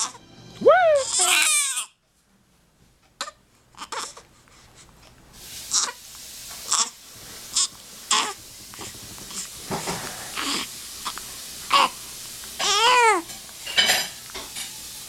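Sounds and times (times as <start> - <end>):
steady background hiss: 0.0 - 15.0
baby hiccuping: 1.0 - 1.9, 7.6 - 9.4, 12.6 - 13.3.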